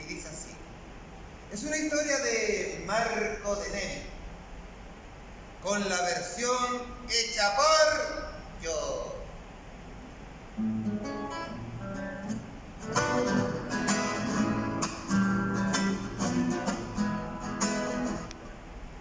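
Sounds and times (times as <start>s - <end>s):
plucked string instrument: 10.6s - 18.5s.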